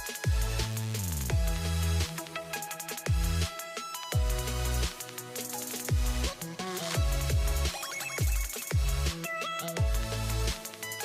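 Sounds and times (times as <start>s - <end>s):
hi-hat ticks: 0.0s - 7.6s
electronic dance music: 0.0s - 11.0s.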